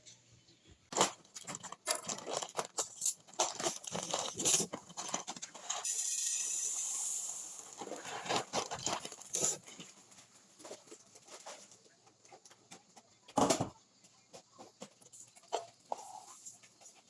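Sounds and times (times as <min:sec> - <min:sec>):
steady hiss: 0:05.8 - 0:08.3.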